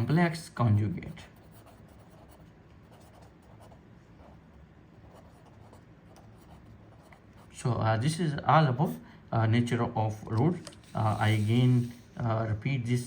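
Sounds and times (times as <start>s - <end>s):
pen scratching while writing: 1.4s - 3.8s, 5.0s - 7.2s.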